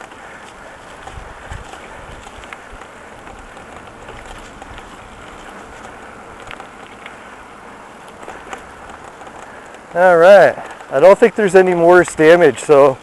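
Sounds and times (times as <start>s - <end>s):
faint clicks: 0.0s - 7.3s, 8.0s - 11.0s
road and wind noise: 0.0s - 13.0s.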